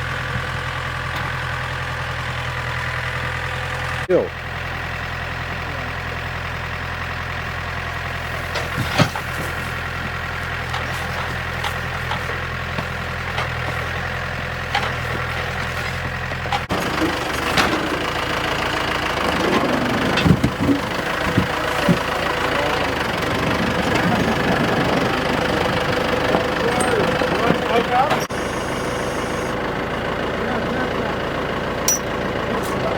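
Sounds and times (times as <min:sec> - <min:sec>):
engine idling: 0:00.0 - 0:32.9
engine running roughly: 0:00.0 - 0:32.9
sharp knocks and clunks: 0:08.5 - 0:13.9.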